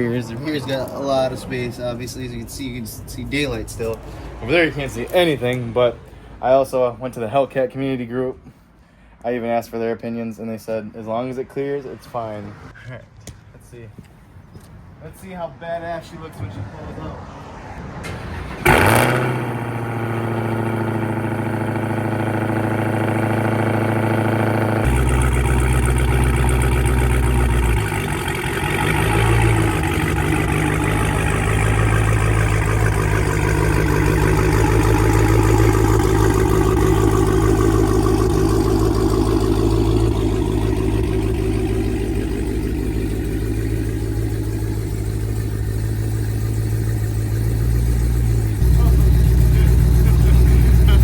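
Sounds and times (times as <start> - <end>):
car engine running at low speed: 18.3 - 51.0.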